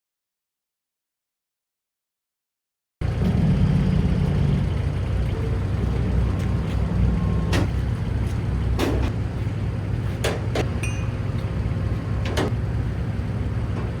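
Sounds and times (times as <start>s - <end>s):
heavy engine running: 3.0s - 14.0s
sharp metallic knocks: 10.2s - 11.3s.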